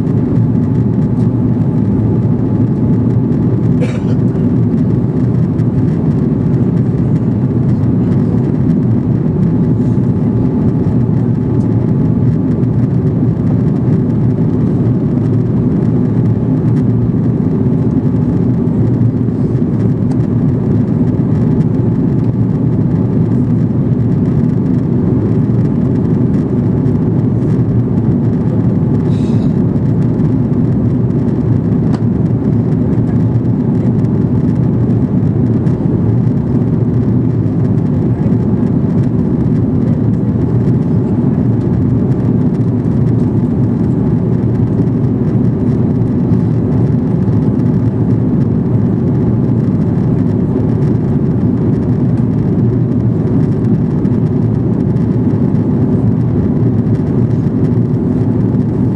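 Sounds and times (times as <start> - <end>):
airliner cabin engine noise: 0.0 - 58.9.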